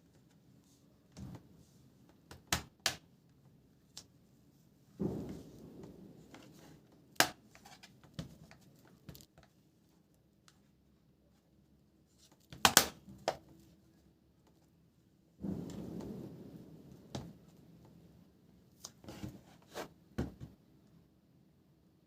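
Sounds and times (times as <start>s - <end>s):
rustle: 4.0s - 9.3s.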